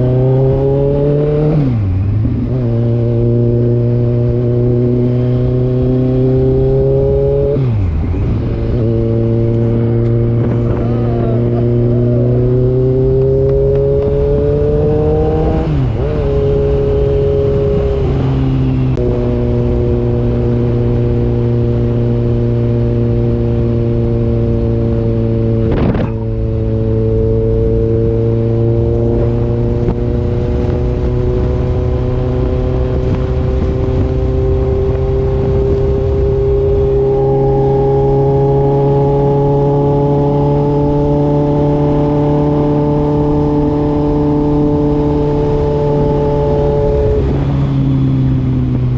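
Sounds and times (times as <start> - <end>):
vehicle engine running: 7.7 - 16.5.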